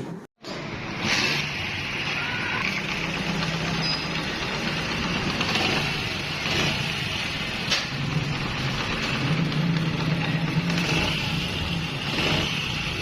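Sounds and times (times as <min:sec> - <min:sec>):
motorcycle engine idling: 0:02.7 - 0:13.0.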